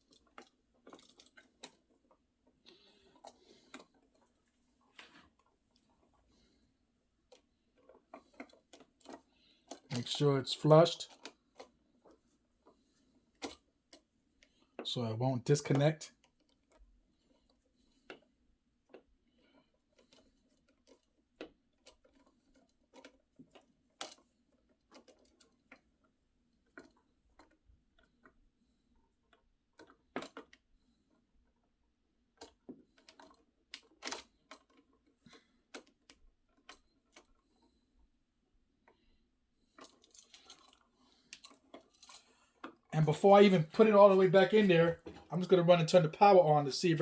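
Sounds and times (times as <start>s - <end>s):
small parts clicking and tapping: 0.0s - 6.0s, 11.0s - 12.8s, 15.7s - 28.4s, 29.3s - 31.6s, 32.4s - 37.4s, 39.7s - 43.4s.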